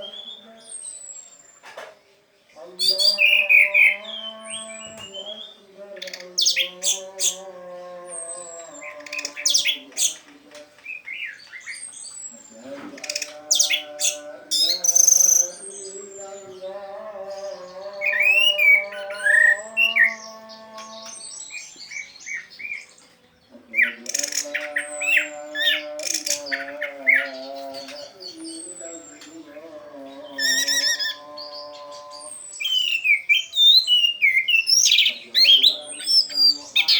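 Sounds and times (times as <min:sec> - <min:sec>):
bird chirping and whistling: 0:00.0 - 0:01.6, 0:02.8 - 0:07.4, 0:08.2 - 0:10.2, 0:10.9 - 0:16.3, 0:18.0 - 0:20.3, 0:21.0 - 0:23.0, 0:23.8 - 0:29.4, 0:30.3 - 0:31.2, 0:32.3 - 0:36.9
thrush singing high notes: 0:11.3 - 0:23.0, 0:23.6 - 0:34.4.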